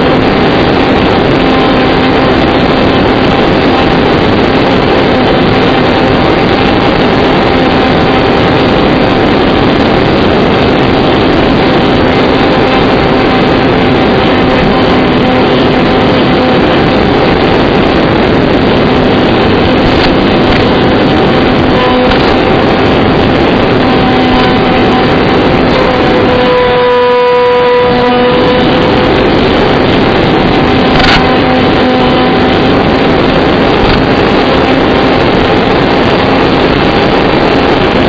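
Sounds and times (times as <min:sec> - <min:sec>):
electric motor and propeller: 0:00.0 - 0:38.0
wind noise: 0:00.0 - 0:38.0.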